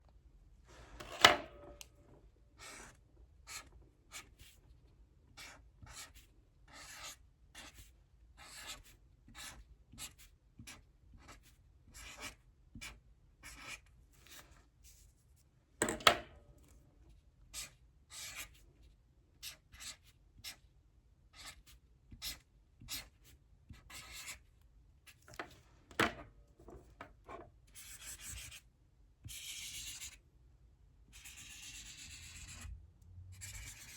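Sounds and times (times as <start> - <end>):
pen writing strokes: 2.6 - 4.6, 5.4 - 15.0, 17.6 - 18.6, 21.4 - 24.4, 27.7 - 28.6, 29.3 - 30.2, 31.2 - 32.7, 33.4 - 33.9.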